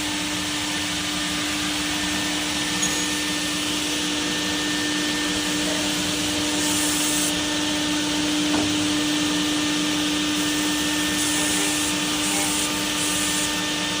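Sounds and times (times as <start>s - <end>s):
machine hum: 0.0s - 9.6s.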